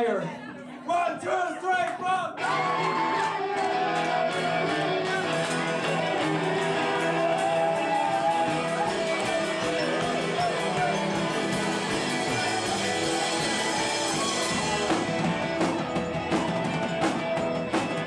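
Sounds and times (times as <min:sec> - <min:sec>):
rock band playing live: 0:02.4 - 0:18.0.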